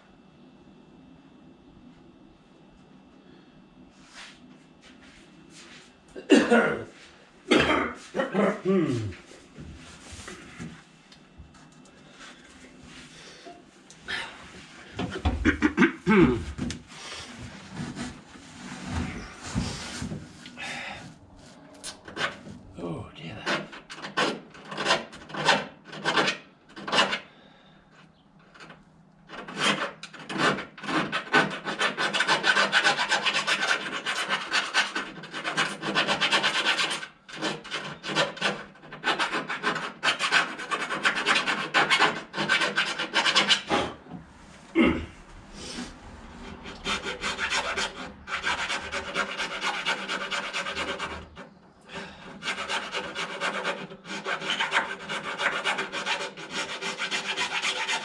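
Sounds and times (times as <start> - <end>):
hand file rasping: 29.3 - 44.0, 46.4 - 58.0.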